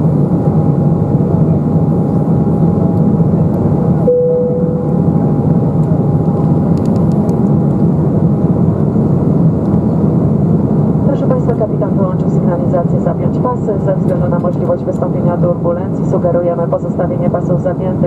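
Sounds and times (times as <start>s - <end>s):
faint steady whine: 0.0s - 10.2s
jet engine cabin hum: 0.0s - 18.0s
brief cabin tone: 4.0s - 5.4s.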